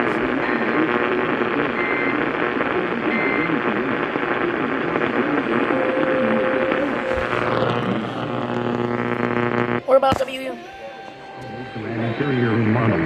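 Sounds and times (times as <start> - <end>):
radio hiss: 0.0 - 10.6
overlapping radio voices: 0.0 - 13.0.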